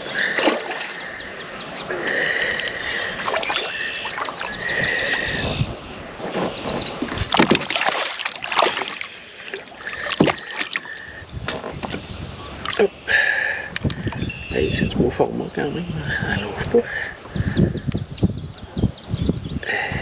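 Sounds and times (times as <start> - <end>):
water splashes: 0.0 - 5.6, 6.2 - 14.2
water sloshing around kayak: 0.0 - 14.4.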